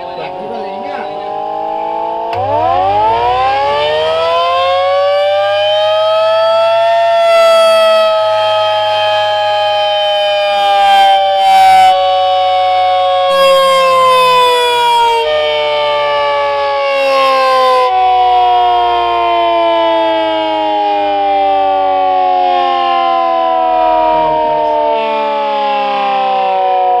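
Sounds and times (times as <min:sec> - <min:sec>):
air-raid siren winding down: 0:00.0 - 0:27.0.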